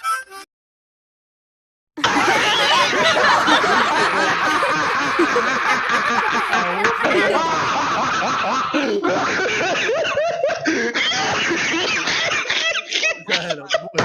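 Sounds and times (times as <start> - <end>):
many people laughing: 2.0 - 14.0.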